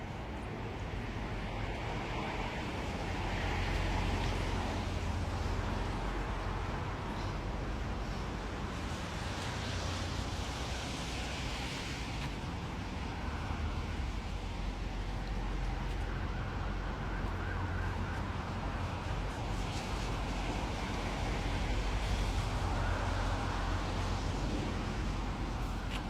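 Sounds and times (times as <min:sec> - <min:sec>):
road traffic rumble: 0:00.0 - 0:26.0
faint siren wailing: 0:15.6 - 0:26.0.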